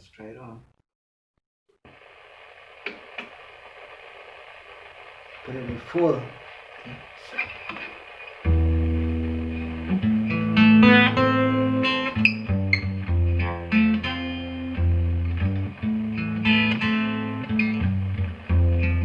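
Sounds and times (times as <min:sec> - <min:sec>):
amplified guitar strumming chords: 0:07.4 - 0:19.0.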